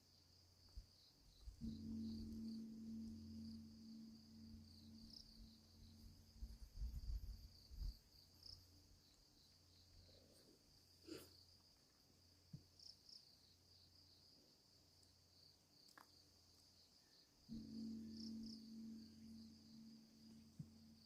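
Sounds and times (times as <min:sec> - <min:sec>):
crickets chirping: 0:00.0 - 0:21.0
soft low thumps: 0:01.3 - 0:08.5, 0:17.5 - 0:21.0
distant temple bell ringing: 0:01.6 - 0:07.2, 0:17.5 - 0:21.0.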